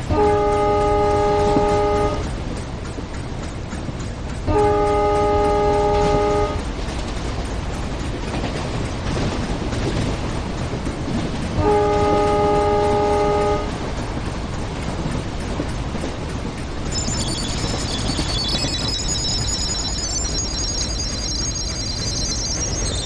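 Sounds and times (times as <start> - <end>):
train horn blasts: 0.0 - 2.3, 4.5 - 6.6, 11.6 - 13.7
train rumbling: 0.0 - 23.0.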